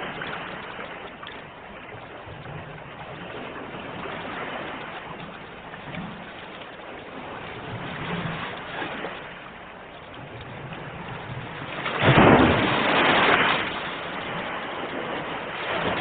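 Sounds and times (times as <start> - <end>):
ocean surf washing: 0.0 - 16.0
wave crashing: 10.3 - 16.0.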